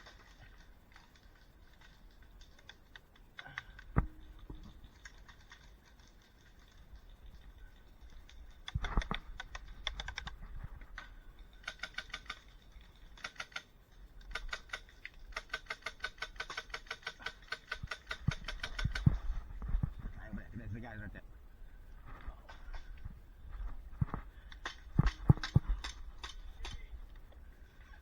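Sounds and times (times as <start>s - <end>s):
dull thumps: 22.0s - 26.9s.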